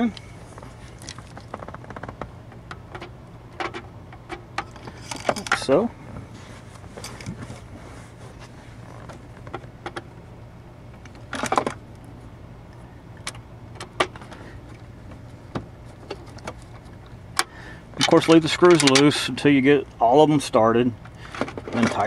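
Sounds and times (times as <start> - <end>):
clicks of plastic parts handled: 1.0 - 5.7.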